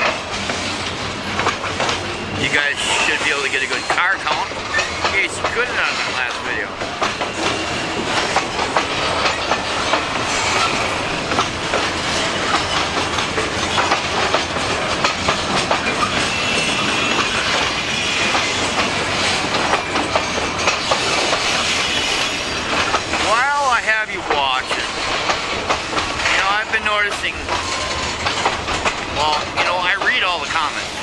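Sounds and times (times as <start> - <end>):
train rumble: 0.0 - 31.0
wheels clacking over rail joints: 0.0 - 31.0
high wheel squeal: 2.0 - 11.4, 15.3 - 25.2, 26.4 - 28.4.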